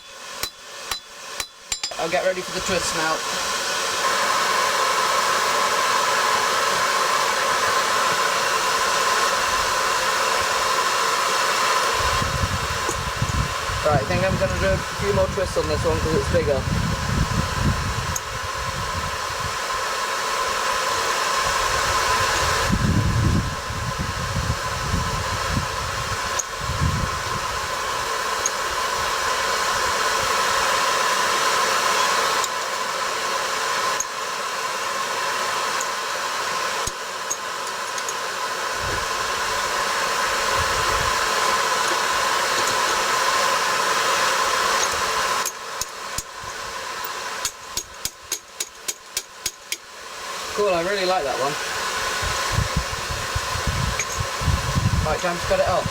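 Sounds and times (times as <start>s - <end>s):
sharp metal knocks: 0.0s - 2.0s
forge blowing hiss: 0.0s - 55.9s.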